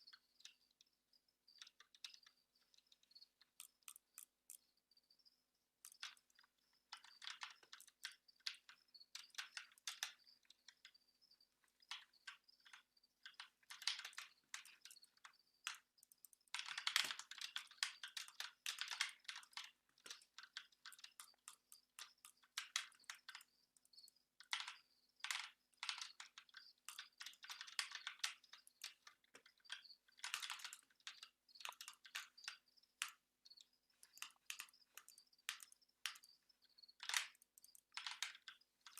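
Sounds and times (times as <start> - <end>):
keyboard typing clicks: 1.6 - 4.7, 11.8 - 38.9.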